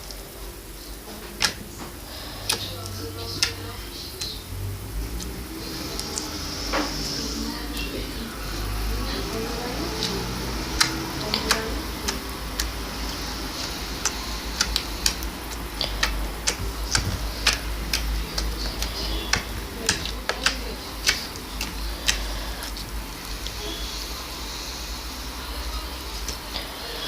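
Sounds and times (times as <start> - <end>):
slime clicking and popping: 1.4 - 1.7, 2.4 - 4.4, 5.1 - 6.4, 9.8 - 23.6.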